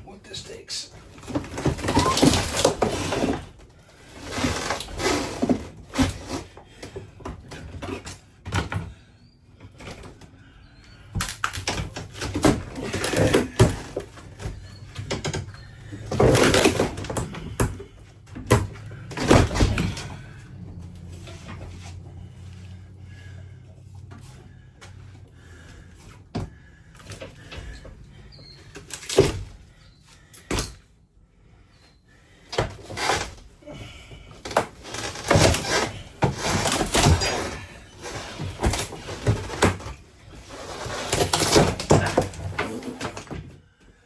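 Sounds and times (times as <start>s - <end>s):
porcelain crashing and cracking: 40.6s - 43.3s.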